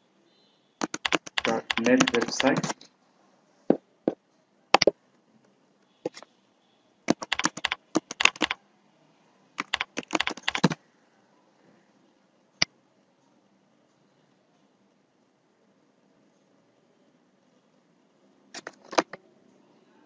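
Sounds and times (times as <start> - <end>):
typing on computer keyboard: 0.8 - 2.8, 7.1 - 8.6, 9.6 - 10.8, 18.6 - 19.2.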